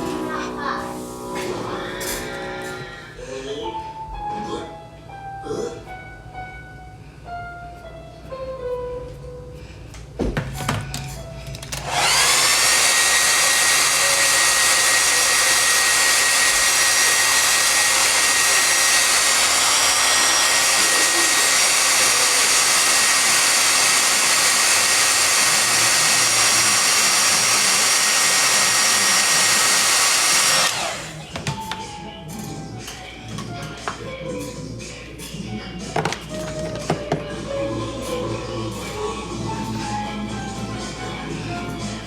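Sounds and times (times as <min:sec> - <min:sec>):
hair dryer blowing: 0:11.6 - 0:31.5.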